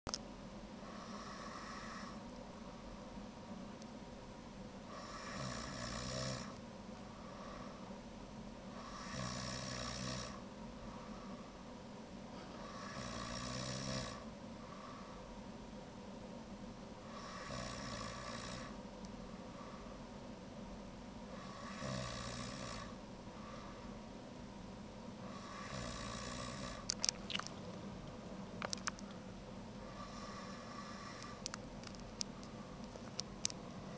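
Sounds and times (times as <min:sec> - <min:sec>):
person snoring: 0:00.9 - 0:02.2, 0:04.9 - 0:06.6, 0:08.8 - 0:10.4, 0:12.6 - 0:14.3, 0:17.0 - 0:18.8, 0:21.3 - 0:23.0, 0:25.3 - 0:26.9, 0:29.8 - 0:31.4
sharp clicks: 0:26.9 - 0:27.6, 0:28.6 - 0:29.1.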